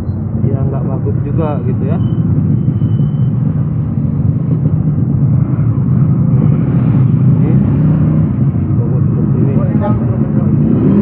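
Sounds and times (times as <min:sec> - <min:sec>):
engine running: 0:00.0 - 0:11.0.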